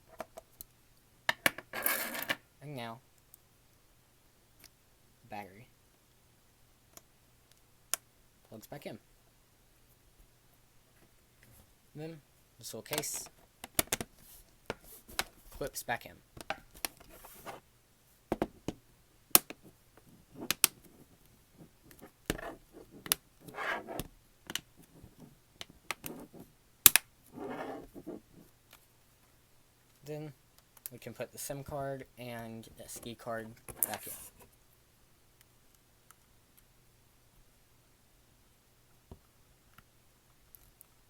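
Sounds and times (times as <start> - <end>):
plastic clicks and snaps: 26.9 - 27.1.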